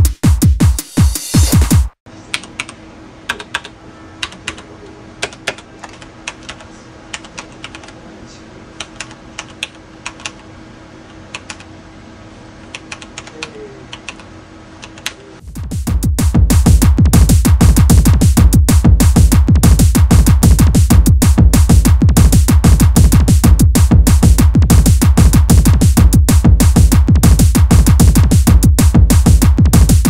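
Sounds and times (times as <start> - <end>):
electronic music: 0.0 - 2.0, 15.4 - 30.0
mechanical keyboard typing: 3.3 - 8.0, 8.8 - 10.4, 11.3 - 11.6, 12.7 - 14.2.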